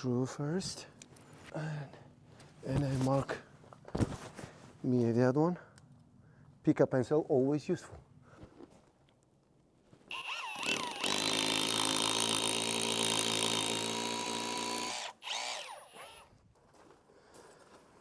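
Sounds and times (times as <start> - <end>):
power drill drilling into wall: 10.1 - 16.3.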